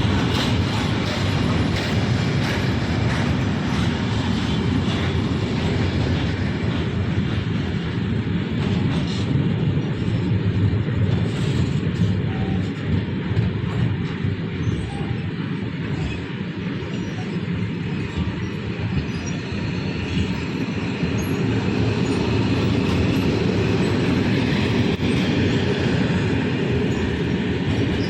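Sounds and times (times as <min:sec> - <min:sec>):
train rumbling past: 0:00.0 - 0:28.0.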